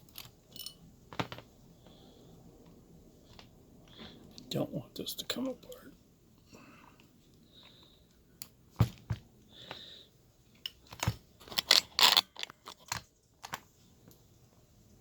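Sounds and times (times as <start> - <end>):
metal parts scraping and rattling: 0.0 - 1.5, 10.5 - 13.6
padlock parts clicking and knocking: 0.0 - 1.6, 10.5 - 13.6.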